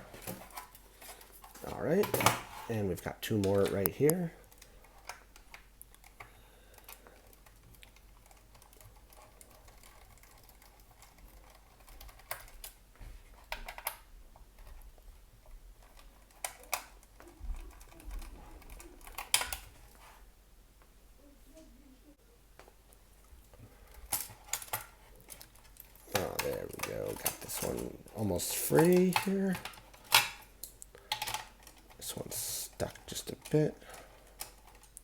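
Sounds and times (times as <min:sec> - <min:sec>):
light handling: 0:22.6 - 0:35.0.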